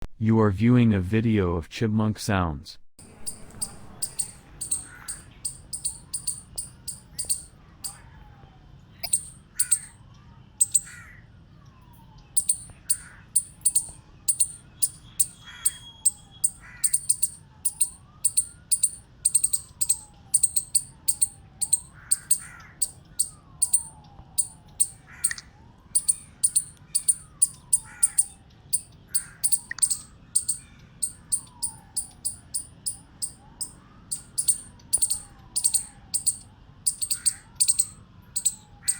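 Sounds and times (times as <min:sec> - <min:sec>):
chipmunk chipping: 0:03.0 - 0:08.0, 0:09.0 - 0:10.0, 0:10.6 - 0:11.0, 0:12.4 - 0:38.9
rising and falling whistles: 0:03.0 - 0:08.0, 0:12.4 - 0:25.4, 0:26.0 - 0:38.8.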